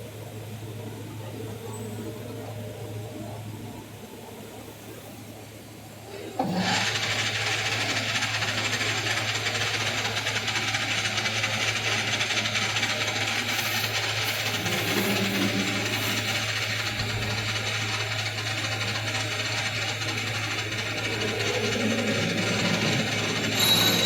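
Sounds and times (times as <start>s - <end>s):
lathe motor humming: 6.4s - 24.0s
metal cutting hiss: 13.2s - 17.4s.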